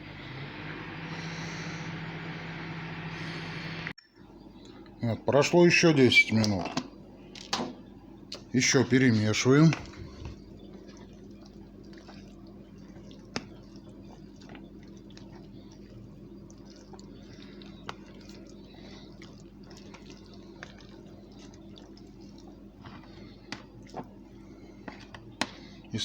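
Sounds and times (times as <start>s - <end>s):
steady low hum: 0.0s - 26.0s
spoon stirring thick stew: 8.4s - 26.0s.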